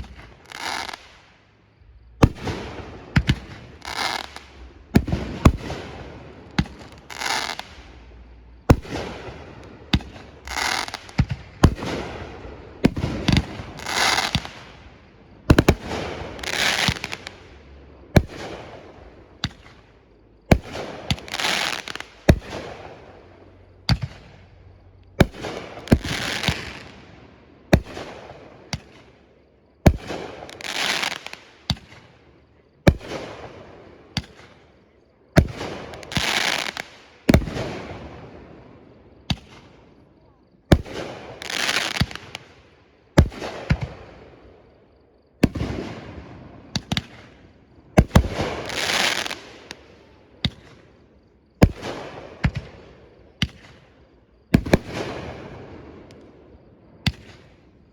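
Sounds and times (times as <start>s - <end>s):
crackling firework shell bursts: 0.0s - 8.1s, 9.9s - 12.1s, 12.9s - 14.8s, 15.5s - 17.5s
fireworks bangs: 0.0s - 14.9s, 15.5s - 19.9s, 20.5s - 23.2s, 25.2s - 29.1s, 35.4s - 38.4s, 48.0s - 49.8s, 54.6s - 56.3s.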